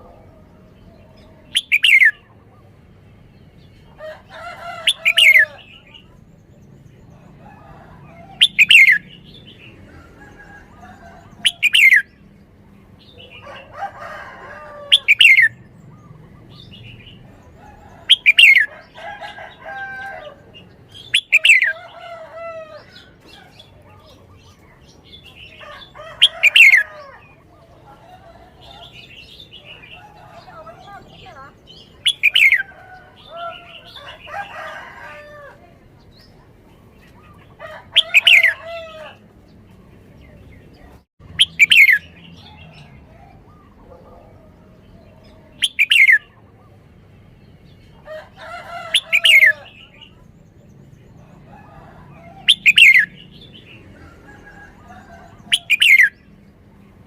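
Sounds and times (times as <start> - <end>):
bird singing loud phrases: 0.0 - 57.0
soft bird chattering: 1.5 - 2.2, 22.9 - 34.2.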